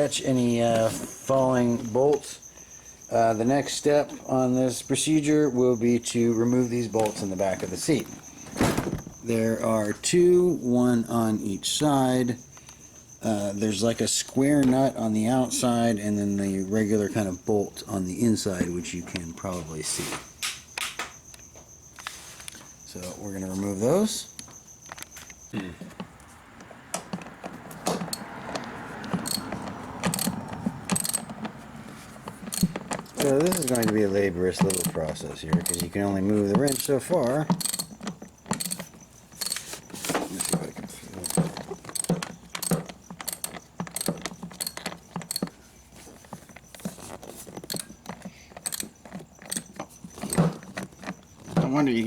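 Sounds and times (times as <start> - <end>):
metal hand tools clinking: 27.9 - 31.5, 32.3 - 52.0.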